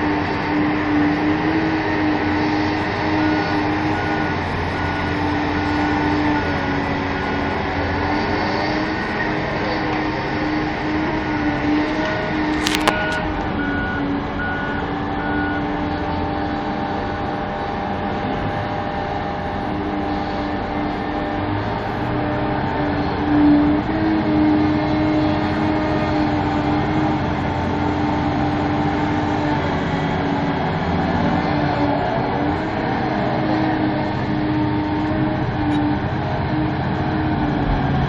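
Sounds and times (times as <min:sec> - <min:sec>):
large diesel engines running: 0:00.0 - 0:38.0
reversing alarm short beeps: 0:12.7 - 0:15.7.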